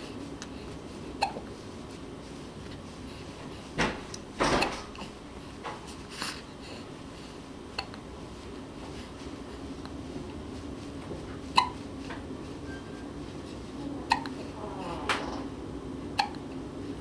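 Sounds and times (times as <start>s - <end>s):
low steady hum: 0.0s - 17.0s
soft knocks and rustles: 1.8s - 6.1s, 10.2s - 13.8s.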